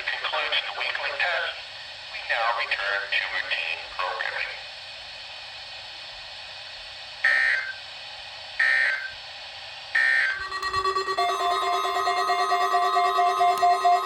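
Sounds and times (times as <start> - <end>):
radio hiss: 0.0 - 4.7
shrill digital data bursts: 10.4 - 14.0
steady electronic tones: 10.4 - 14.0.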